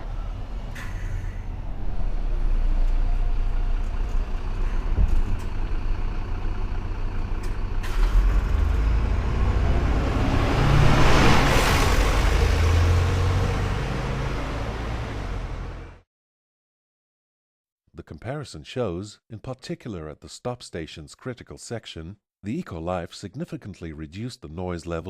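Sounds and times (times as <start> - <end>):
bus engine accelerating: 0.0 - 16.0.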